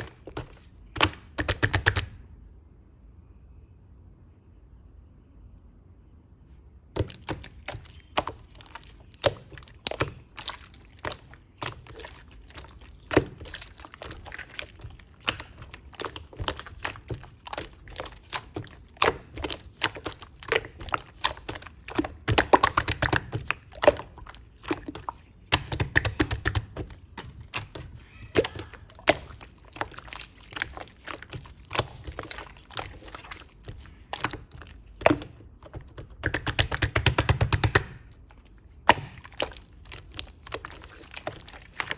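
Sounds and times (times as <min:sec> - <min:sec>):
slime wet clicks and pops: 0:07.0 - 0:38.1.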